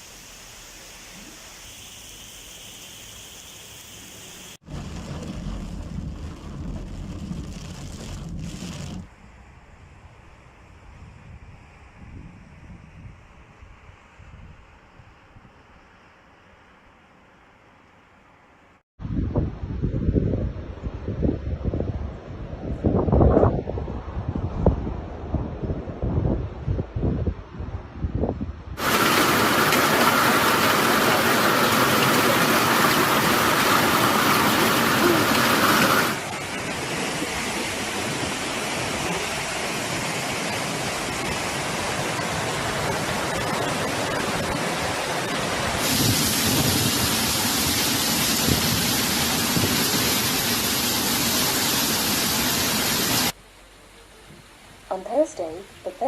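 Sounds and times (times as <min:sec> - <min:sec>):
rushing floodwater and heavy rain: 0:04.3 - 0:09.1, 0:28.8 - 0:53.8
wind buffeting microphone: 0:04.7 - 0:14.7, 0:19.0 - 0:39.6, 0:41.0 - 0:50.3.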